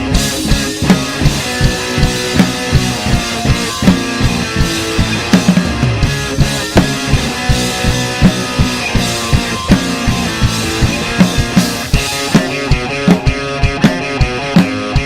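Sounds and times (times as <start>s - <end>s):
rock music with drums and guitars: 0.0s - 15.0s.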